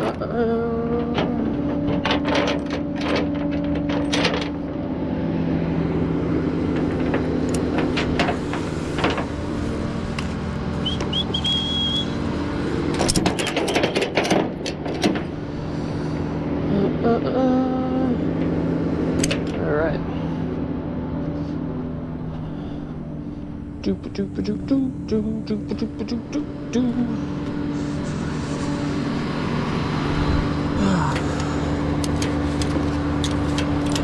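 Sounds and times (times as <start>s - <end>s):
metallic clanks and rattles: 0.0s - 4.8s, 6.7s - 9.4s, 12.9s - 15.5s, 19.2s - 19.8s, 32.0s - 34.0s
truck engine idling: 0.0s - 34.0s.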